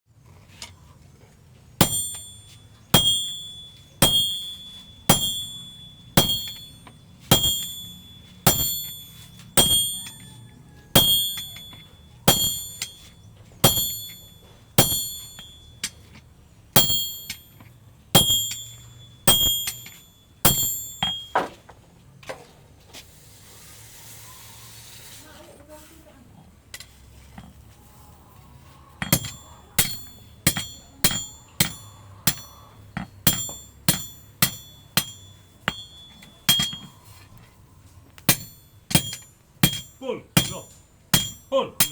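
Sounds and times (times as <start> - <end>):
hammer striking metal on anvil: 1.8 - 21.6, 29.0 - 37.2, 38.2 - 41.9.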